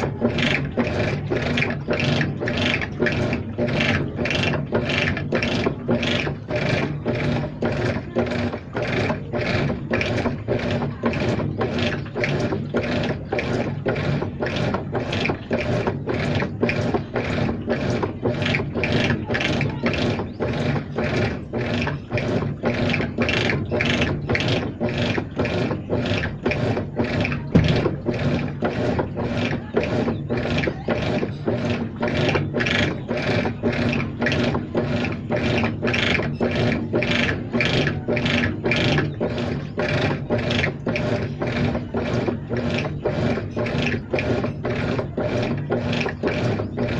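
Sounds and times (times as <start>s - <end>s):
rhythmic scraping noise: 0.0s - 46.9s
washing machine motor hum: 0.0s - 46.9s
sharp knock: 27.6s - 28.1s.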